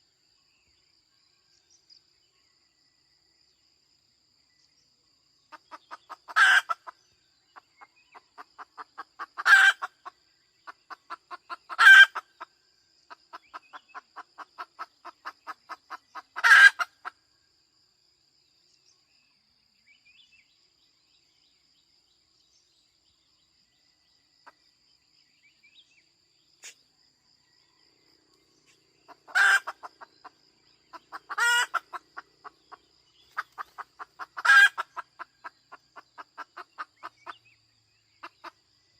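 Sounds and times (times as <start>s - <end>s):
hen cackling: 5.6s - 7.0s, 8.4s - 10.1s, 10.7s - 12.4s, 13.3s - 17.2s, 29.1s - 30.2s, 30.9s - 37.4s.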